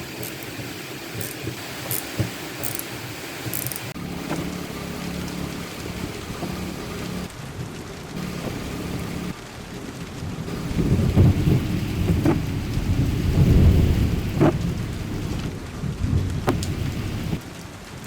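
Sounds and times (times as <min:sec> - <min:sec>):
rain falling on car: 0:00.0 - 0:18.0
windscreen wipers on wet glass: 0:00.0 - 0:18.0
low motor hum: 0:04.0 - 0:09.4, 0:10.2 - 0:17.4.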